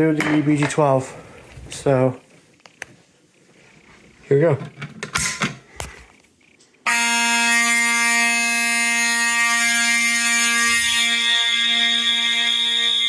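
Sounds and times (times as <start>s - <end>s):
fire alarm horns buzzing: 6.8s - 13.0s
higher shrill tone: 6.9s - 13.0s.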